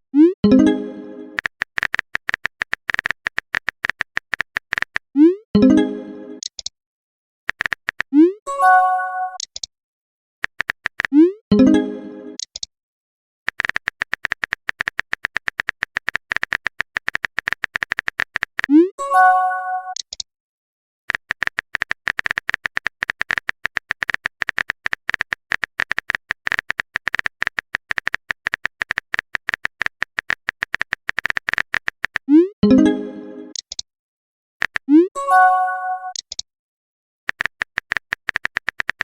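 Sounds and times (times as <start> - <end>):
phone keyboard typing clicks: 1.3 - 5.1, 6.4 - 6.7, 7.5 - 8.2, 9.4 - 9.7, 10.4 - 11.2, 12.4 - 12.7, 13.5 - 18.8, 19.9 - 20.2, 21.1 - 32.3, 33.5 - 33.8, 34.6 - 35.0, 36.1 - 36.4, 37.3 - 39.0
rising message alert chime: 32.6 - 33.5.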